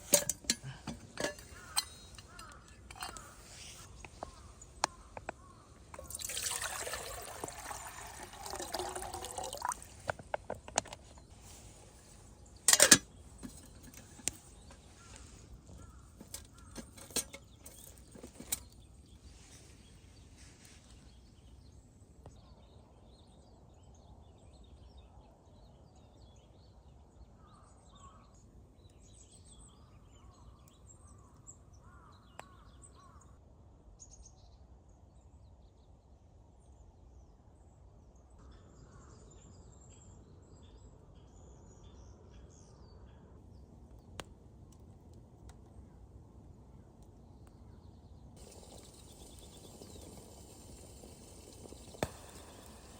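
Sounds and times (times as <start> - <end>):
birds chirping: 0.0 - 21.6, 47.3 - 52.9
low outdoor hum: 0.0 - 24.2, 38.5 - 52.9.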